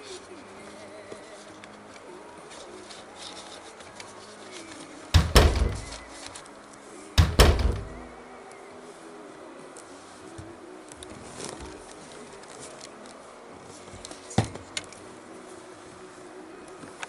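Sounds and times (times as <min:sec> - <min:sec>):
heavy thumps: 0:05.2 - 0:06.1, 0:07.2 - 0:08.2.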